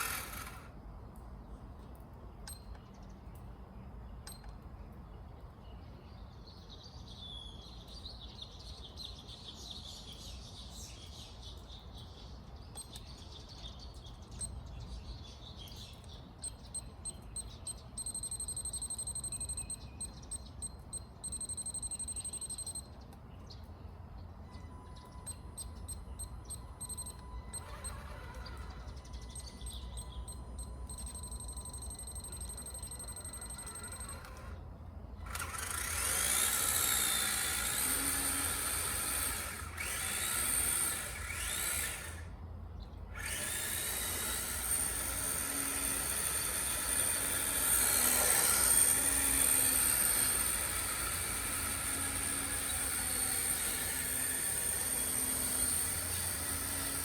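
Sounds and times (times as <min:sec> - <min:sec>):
electric motor whine: 0:00.0 - 0:00.8, 0:24.5 - 0:34.6, 0:35.2 - 0:42.3, 0:43.1 - 0:57.0.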